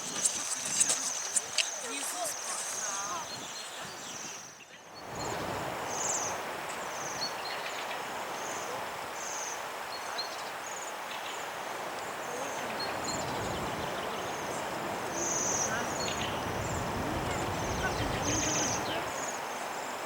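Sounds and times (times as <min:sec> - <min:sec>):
waterfall rushing: 0:05.0 - 0:20.0.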